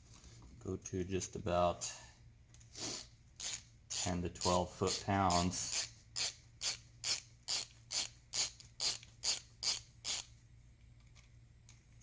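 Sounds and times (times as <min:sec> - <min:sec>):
hand ratchet clicking: 0:03.0 - 0:10.3.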